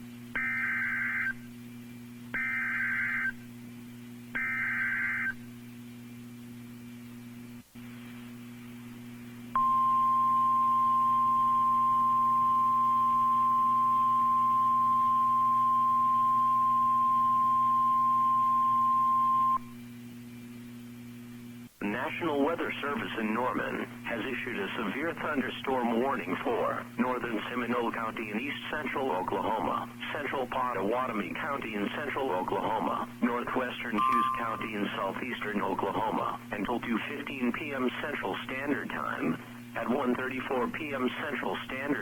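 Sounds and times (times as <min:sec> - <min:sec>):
low radio hum: 0:00.0 - 0:42.0
steady warning alarm tone: 0:00.4 - 0:01.4, 0:02.4 - 0:03.4, 0:04.4 - 0:05.4, 0:09.6 - 0:19.6.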